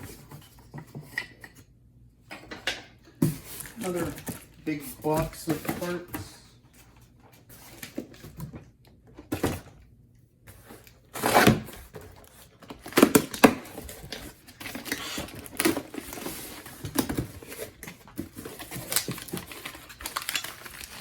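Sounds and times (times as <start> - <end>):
knocks and bumps of unpacking: 3.2 - 6.4, 7.7 - 9.8, 10.8 - 21.0
packaging rustling: 3.4 - 6.1, 10.8 - 21.0.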